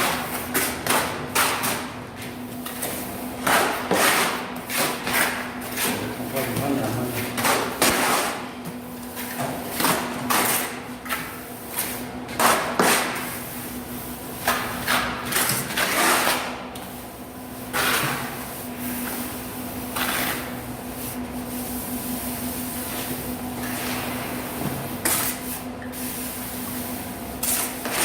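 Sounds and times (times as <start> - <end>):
trowel scraping mortar: 14.4 - 16.6, 17.7 - 18.4, 19.9 - 20.6, 27.4 - 28.0.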